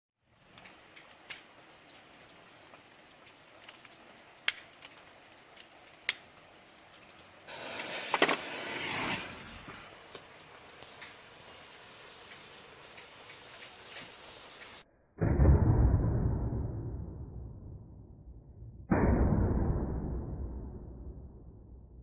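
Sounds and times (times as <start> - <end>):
firecracker sharp cracks: 7.5 - 11.2
firecracker fizzing hiss: 7.5 - 14.8.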